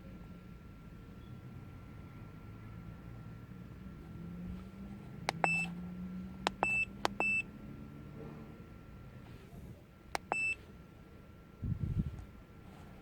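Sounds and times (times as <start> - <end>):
keypad key clicks: 5.3 - 5.7, 6.4 - 7.4, 10.2 - 10.6.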